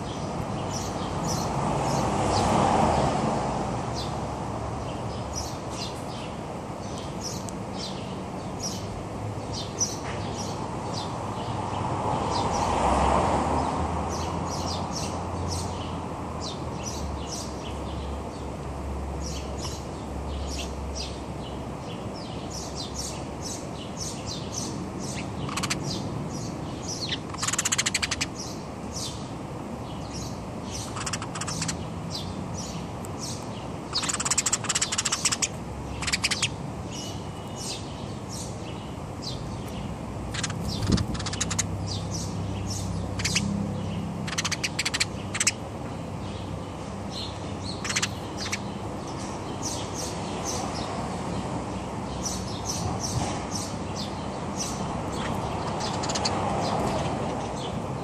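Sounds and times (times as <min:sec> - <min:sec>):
small birds chirping: 0:00.0 - 0:03.2, 0:03.8 - 0:13.0, 0:13.6 - 0:58.0
street background noise: 0:00.0 - 0:58.0
buzzy bird chattering: 0:24.6 - 0:29.2, 0:30.7 - 0:37.2, 0:40.3 - 0:45.7, 0:47.2 - 0:50.6, 0:53.6 - 0:56.9.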